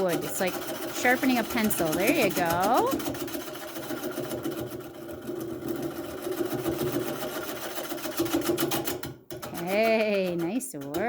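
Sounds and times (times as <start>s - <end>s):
turning tool chattering on wood: 0.0s - 11.0s.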